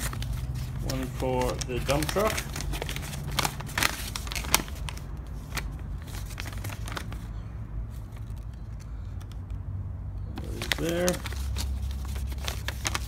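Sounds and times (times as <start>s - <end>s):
paper rustling: 0.0s - 7.3s, 10.4s - 13.0s.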